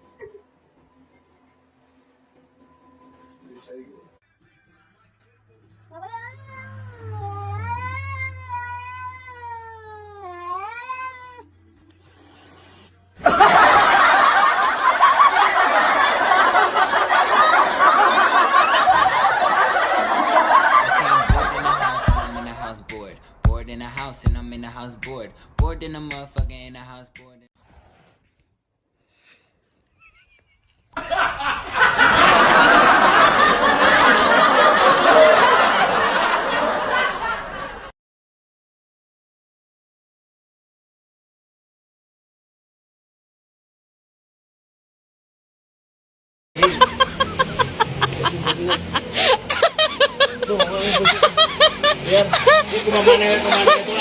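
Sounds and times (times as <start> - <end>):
cat meowing: 5.9 - 11.5
loud laughter: 13.2 - 22.8, 30.0 - 37.9, 46.6 - 54.0.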